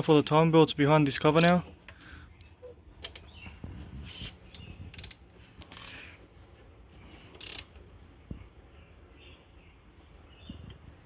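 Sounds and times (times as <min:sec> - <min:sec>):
ratchet wrench clicking: 0:04.5 - 0:05.9, 0:07.3 - 0:07.8.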